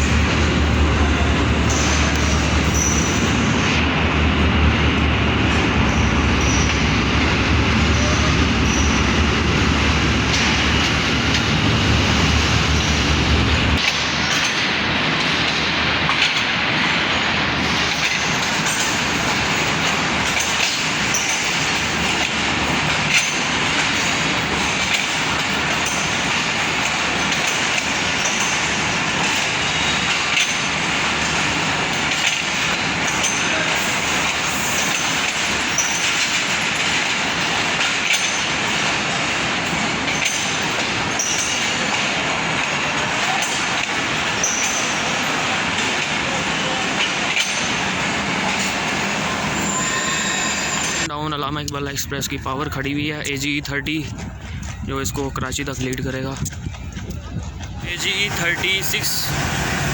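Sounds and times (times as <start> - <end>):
train heavy low rumble: 0.0 - 59.9
train wheels rolling on rails: 0.0 - 59.9
brief squeaks: 1.7 - 3.3, 49.6 - 51.1.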